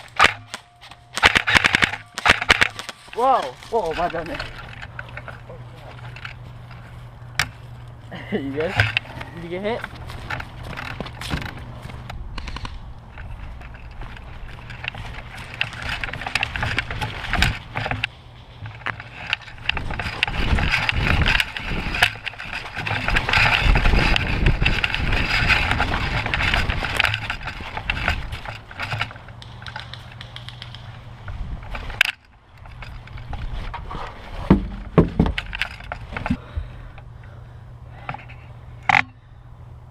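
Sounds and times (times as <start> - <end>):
crunching and rustling close up: 0.0 - 36.4
footsteps: 0.0 - 36.4.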